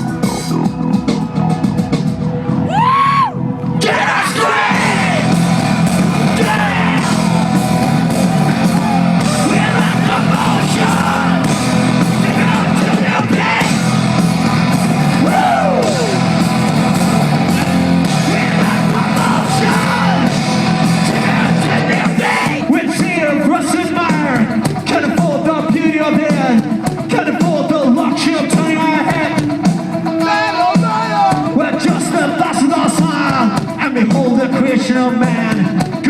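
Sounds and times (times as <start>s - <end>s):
distorted guitars: 0.0s - 36.0s
heavy rock band playing: 0.0s - 36.0s
voices yelling: 17.6s - 20.4s, 30.2s - 31.6s.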